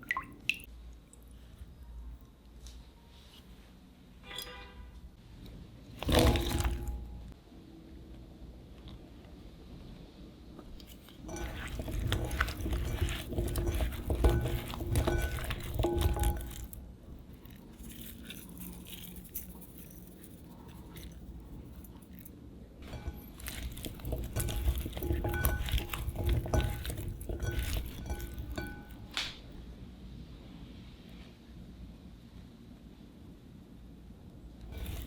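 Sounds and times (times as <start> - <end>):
utensils clinking against a bowl: 6.0 - 7.3, 10.8 - 29.5, 34.7 - 35.0
quiet handling: 10.7 - 18.9, 22.8 - 29.6.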